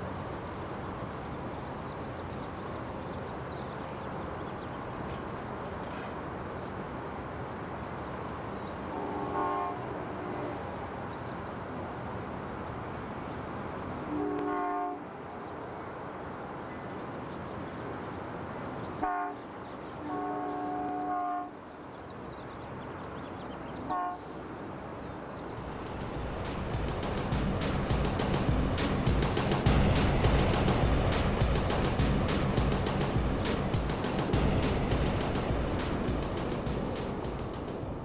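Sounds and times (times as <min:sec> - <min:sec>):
locomotive air horn blasts: 0:09.0 - 0:10.7, 0:14.1 - 0:15.0, 0:19.0 - 0:19.4, 0:20.0 - 0:21.6, 0:23.9 - 0:24.2
train rumbling: 0:25.5 - 0:38.0.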